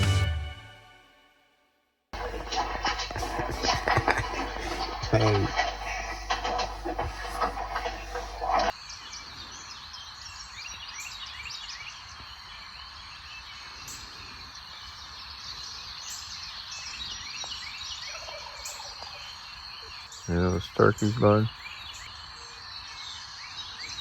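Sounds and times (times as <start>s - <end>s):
turkeys gobbling: 2.2s - 8.7s, 18.1s - 19.2s
birds chirping and calling: 2.2s - 24.0s.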